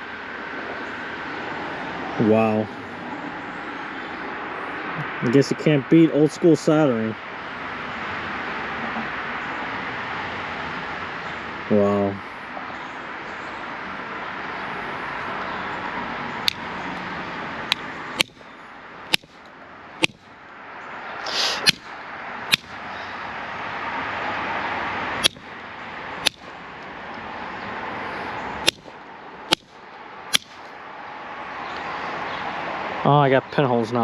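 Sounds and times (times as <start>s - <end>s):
pliers striking metal pipe fitting: 17.7s - 18.4s
short hiss: 21.2s - 21.8s.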